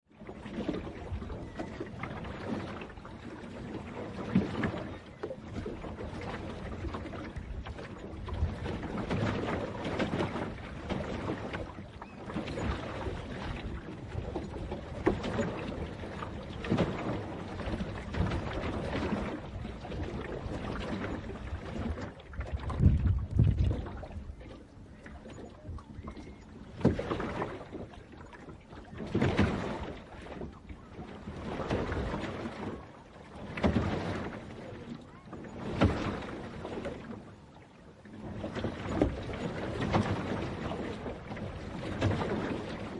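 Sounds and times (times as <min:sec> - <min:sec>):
water splashing and sloshing: 0:00.0 - 0:42.9.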